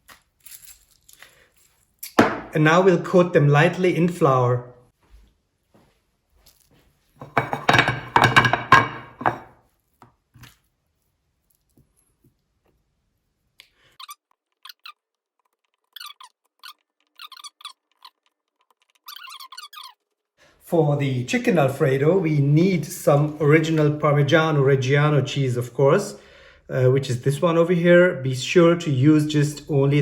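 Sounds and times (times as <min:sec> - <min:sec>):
dish scraping on work surface: 0:07.2 - 0:09.5
soft knocks: 0:07.2 - 0:09.5.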